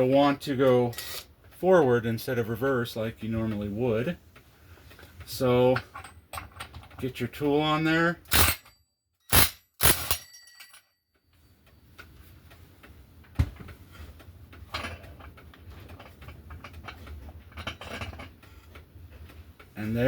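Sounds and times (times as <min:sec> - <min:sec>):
metal tool clacking: 0:00.9 - 0:01.3, 0:05.8 - 0:07.1, 0:08.3 - 0:08.7
small clicks and scraping: 0:04.3 - 0:07.2, 0:11.4 - 0:20.0.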